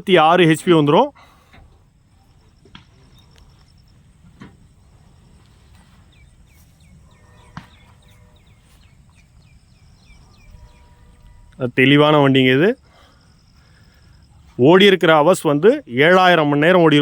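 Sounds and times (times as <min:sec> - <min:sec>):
faint outdoor background noise: 0:00.0 - 0:17.0
bird chirping: 0:02.1 - 0:11.9.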